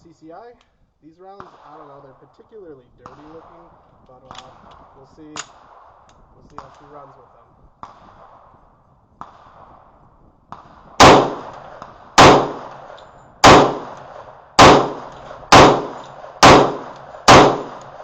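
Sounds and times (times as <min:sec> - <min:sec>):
pistol shots with ringing echo: 0:09.2 - 0:18.0.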